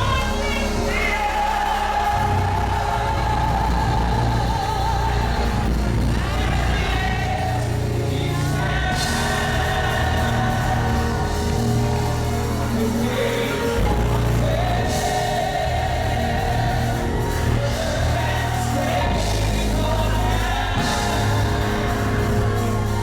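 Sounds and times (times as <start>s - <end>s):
steady bass line: 0.0s - 23.0s.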